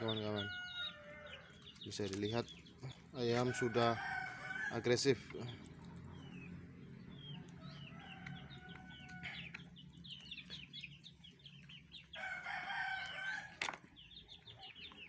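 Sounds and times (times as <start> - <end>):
rooster crowing: 0.0 - 1.4, 3.4 - 4.9, 7.6 - 9.5, 12.2 - 13.6
chicks peeping and clucking: 0.0 - 15.0.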